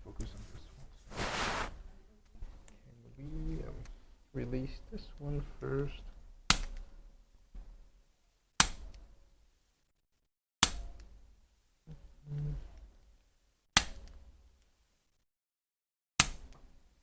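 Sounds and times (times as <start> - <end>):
sharp snapping clicks: 6.5 - 6.9, 8.6 - 9.0, 16.2 - 16.6.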